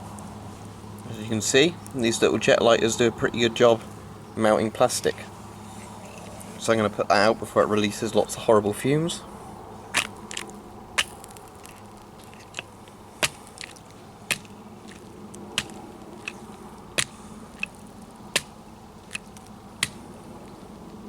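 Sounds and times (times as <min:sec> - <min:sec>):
plastic crackling and popping: 0:10.0 - 0:20.2.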